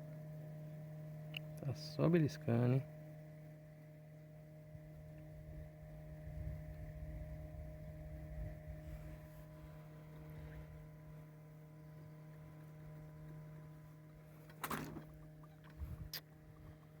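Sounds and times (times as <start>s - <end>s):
boat motor humming: 0.0s - 17.0s.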